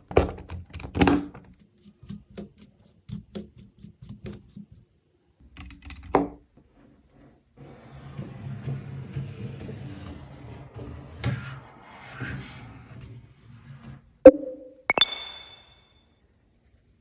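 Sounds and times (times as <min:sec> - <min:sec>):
hard object clinking: 0:14.9 - 0:15.8.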